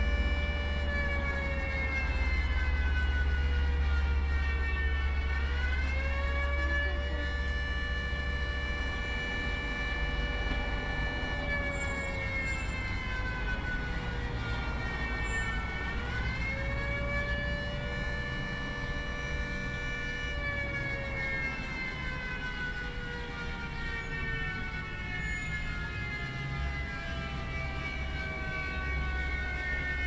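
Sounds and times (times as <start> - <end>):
flood warning siren: 0.0 - 30.0.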